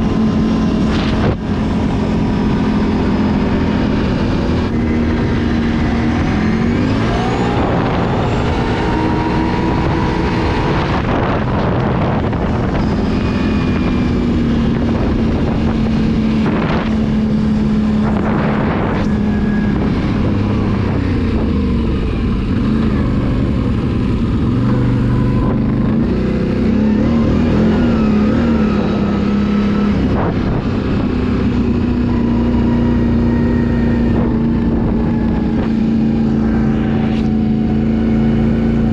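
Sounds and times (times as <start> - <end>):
atv engine running: 0.0 - 38.9.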